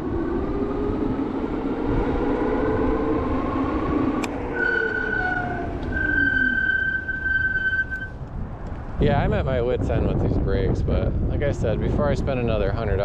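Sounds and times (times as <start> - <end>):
wind and road noise: 0.0 - 13.0
electric motor whining: 1.5 - 8.1
disc brakes squealing: 4.5 - 8.2.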